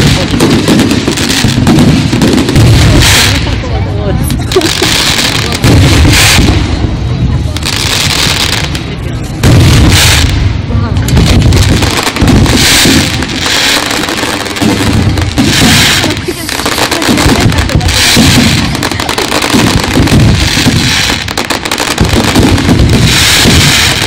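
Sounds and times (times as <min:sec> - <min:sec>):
low rumble of booms: 0:00.0 - 0:04.5, 0:05.5 - 0:13.4
fireworks crackling bursts: 0:00.0 - 0:24.0.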